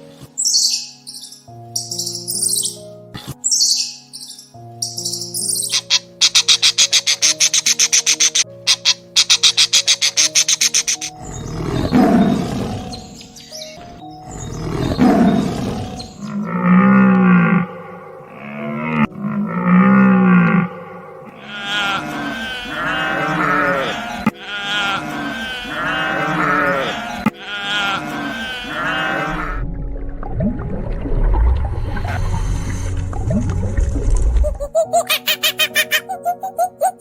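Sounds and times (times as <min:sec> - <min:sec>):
small bird chirping: 0:03.5 - 0:11.5
sustained music notes: 0:04.6 - 0:37.0
large animal roaring: 0:11.2 - 0:13.1, 0:14.3 - 0:29.7
long low animal call: 0:14.3 - 0:29.7.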